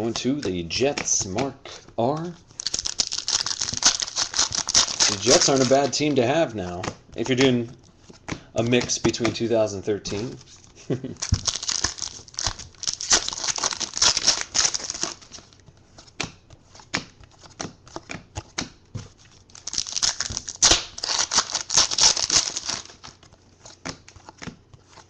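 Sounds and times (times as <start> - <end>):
wrappers crinkling and tearing: 2.1 - 6.2, 10.1 - 15.6, 19.4 - 23.2.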